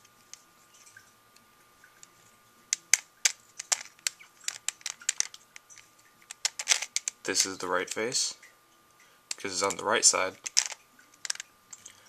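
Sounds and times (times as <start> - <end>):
puzzle cube clicking and rattling: 2.7 - 7.5, 9.3 - 11.5.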